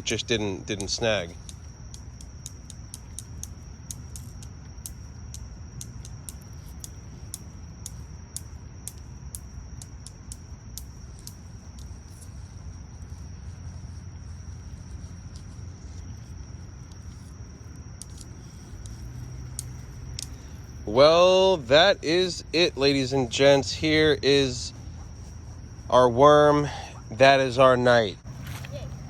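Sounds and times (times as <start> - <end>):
sharp clicks: 0.0 - 12.0, 18.0 - 20.6
night insects trilling: 0.0 - 29.0.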